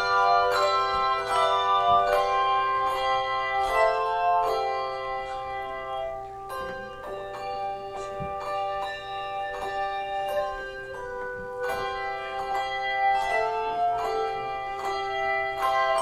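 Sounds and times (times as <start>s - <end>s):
handbell choir playing: 0.0s - 16.0s.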